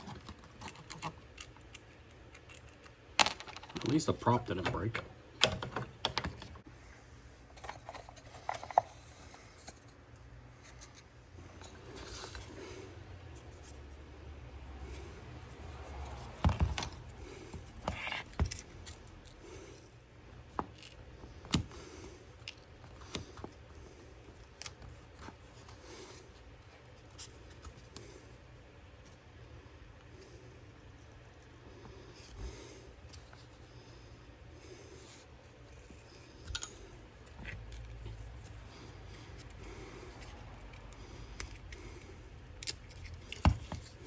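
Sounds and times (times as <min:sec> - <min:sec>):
hand tools clicking and scraping: 0:00.0 - 0:06.6, 0:14.8 - 0:19.9, 0:35.7 - 0:44.0.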